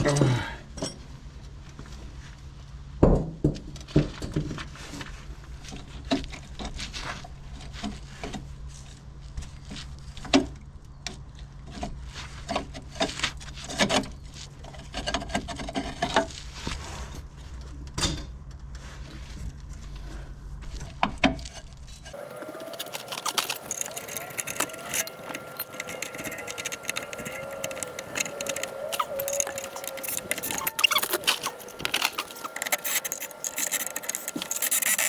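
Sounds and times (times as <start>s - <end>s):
steady low hum: 22.2s - 35.0s.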